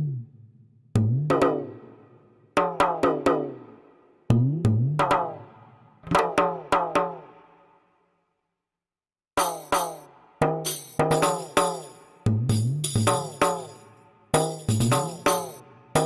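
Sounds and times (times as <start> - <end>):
drum playing rhythmic phrase: 2.6 - 3.7, 4.3 - 5.5, 6.1 - 7.4, 9.4 - 16.0.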